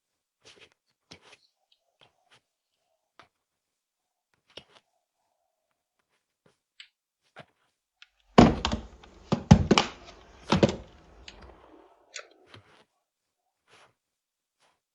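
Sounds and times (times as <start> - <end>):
dull thunks and knocks: 8.4 - 11.8.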